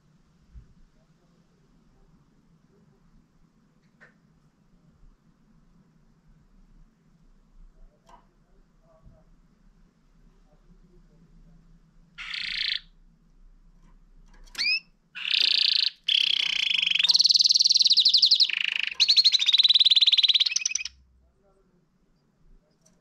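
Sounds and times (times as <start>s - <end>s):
canary singing trills: 12.2s - 13.0s, 14.4s - 21.0s.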